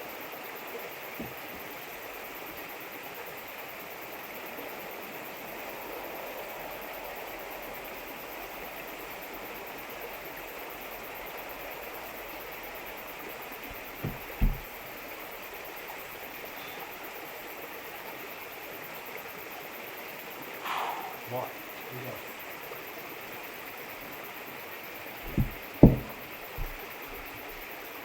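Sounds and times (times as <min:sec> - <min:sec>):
dull low thumps: 0:14.0 - 0:14.8, 0:25.2 - 0:27.5.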